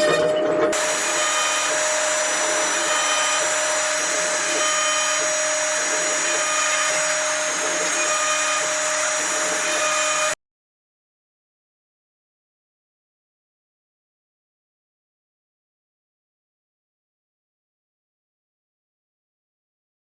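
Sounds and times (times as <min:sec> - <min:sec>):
router spindle whining cutting wood: 0:00.0 - 0:10.4.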